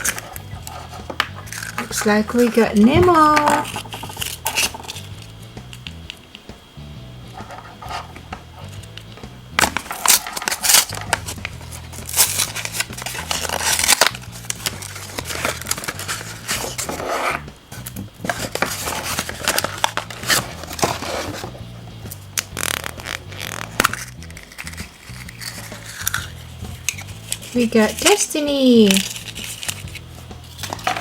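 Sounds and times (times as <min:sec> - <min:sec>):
plastic egg clicks and cracks: 0:00.0 - 0:02.6, 0:08.6 - 0:16.8, 0:22.1 - 0:28.2, 0:28.9 - 0:31.0
wrapper crinkling: 0:00.0 - 0:05.2, 0:09.6 - 0:17.4, 0:18.3 - 0:21.5, 0:22.2 - 0:31.0
background music: 0:00.0 - 0:31.0.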